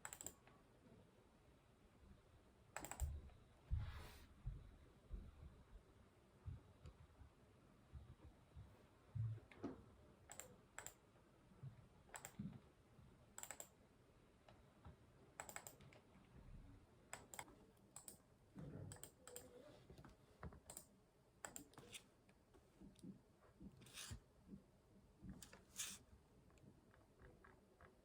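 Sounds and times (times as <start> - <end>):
keyboard and mouse clicking: 0.0 - 0.4, 2.8 - 3.2, 10.3 - 11.0, 12.1 - 12.4, 13.4 - 13.8, 15.4 - 16.0, 17.1 - 18.2, 18.9 - 19.5, 20.6 - 22.0.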